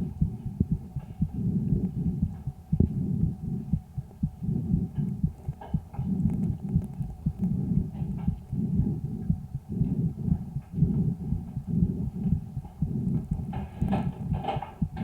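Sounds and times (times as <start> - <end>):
heartbeat thumps: 0.0 - 15.0
calf breath sounds: 7.5 - 14.7.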